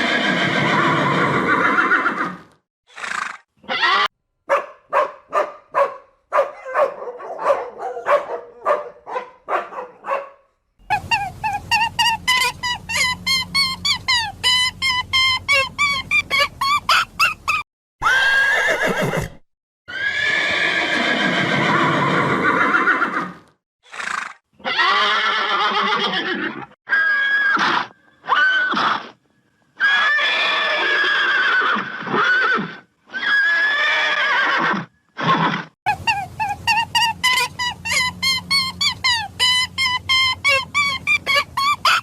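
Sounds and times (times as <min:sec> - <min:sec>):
horse neighing: 0:00.0 - 0:04.1, 0:10.9 - 0:28.8.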